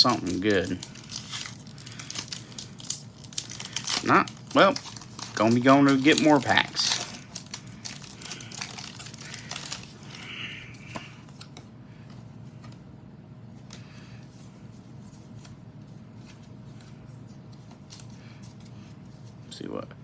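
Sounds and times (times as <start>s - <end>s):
foil pack crinkling: 0.0s - 11.6s.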